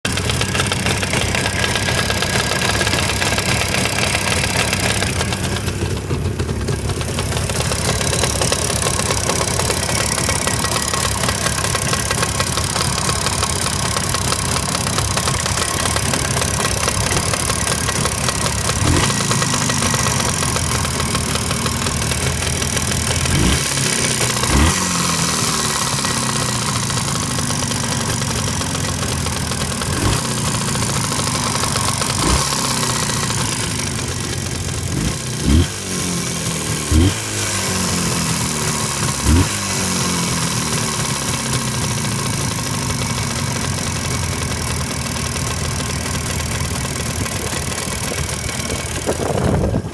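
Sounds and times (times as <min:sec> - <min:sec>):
engine knock: 0:00.0 - 0:49.9
motorcycle engine idling: 0:00.0 - 0:49.9
engine throttle blips: 0:00.1 - 0:35.7.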